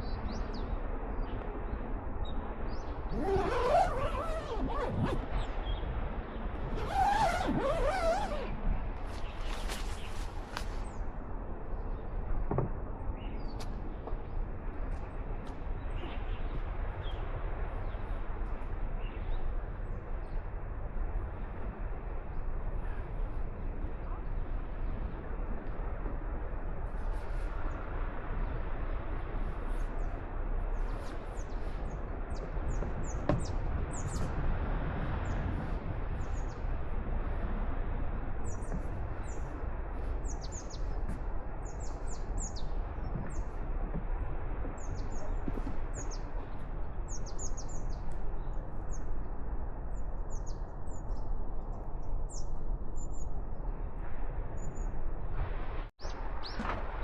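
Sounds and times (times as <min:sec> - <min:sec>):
small birds chirping: 0:38.4 - 0:43.6, 0:44.8 - 0:49.0.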